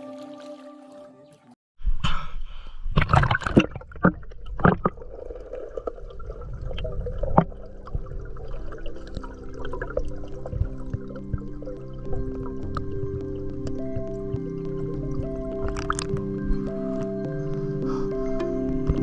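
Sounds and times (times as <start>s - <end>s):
soft background music: 0.0s - 1.5s, 7.0s - 19.0s
water splashing and sloshing: 2.9s - 19.0s
low rumble: 4.2s - 17.9s.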